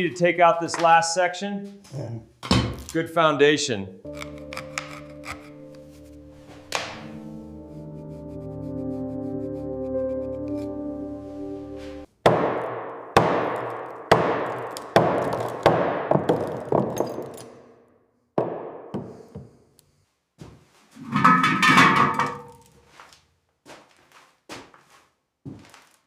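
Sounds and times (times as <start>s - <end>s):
held musical tone: 4.0s - 12.1s
clattering: 21.0s - 22.8s.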